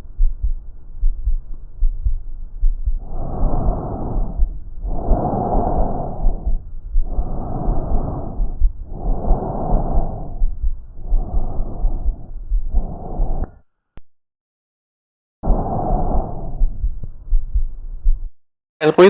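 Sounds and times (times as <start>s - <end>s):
low regular thuds: 0.0s - 13.6s, 16.4s - 18.3s
breathing through stethoscope: 3.0s - 13.6s, 15.4s - 16.8s.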